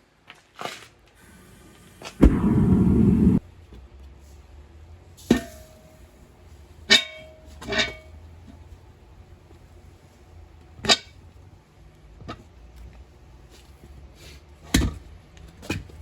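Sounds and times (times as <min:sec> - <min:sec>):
metal clanks with ringing: 0:06.9 - 0:08.2.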